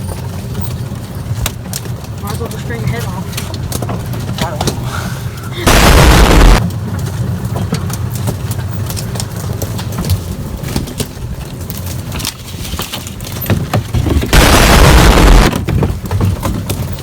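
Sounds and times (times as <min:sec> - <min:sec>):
off-road vehicle engine rumbling: 0:00.0 - 0:17.0
loud burst of noise: 0:05.6 - 0:06.6, 0:14.3 - 0:15.6.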